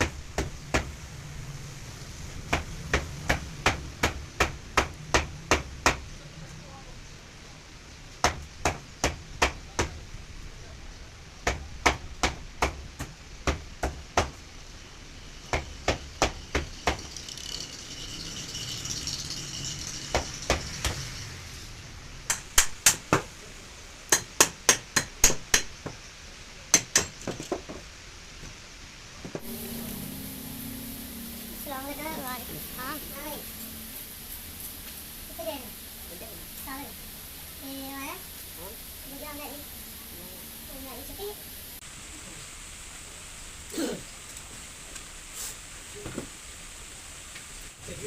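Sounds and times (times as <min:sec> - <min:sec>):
hammer blows on motor: 0:29.4 - 0:34.2.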